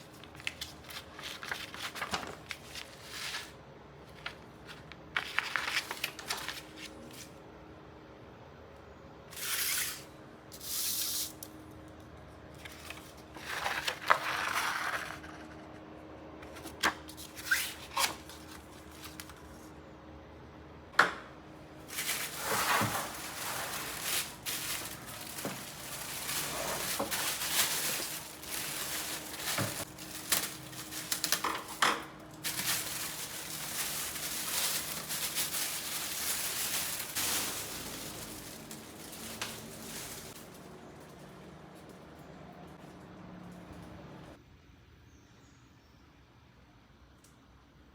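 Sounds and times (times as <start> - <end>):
packaging rustling: 0.0 - 7.3, 21.8 - 41.3.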